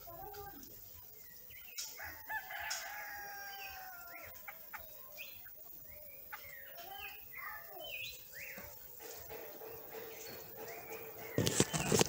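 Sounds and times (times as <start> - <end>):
bird chirps: 0.0 - 12.0
rooster crowing: 2.0 - 4.3.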